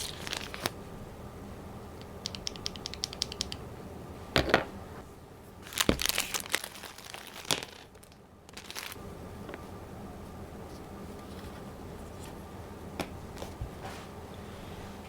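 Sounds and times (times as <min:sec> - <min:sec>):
plastic packaging crinkling: 0:00.0 - 0:00.8, 0:05.6 - 0:09.0.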